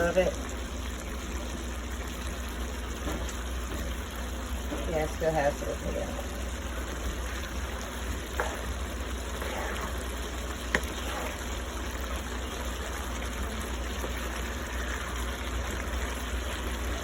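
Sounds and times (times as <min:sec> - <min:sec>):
food sizzling in a pan: 0:00.0 - 0:17.0.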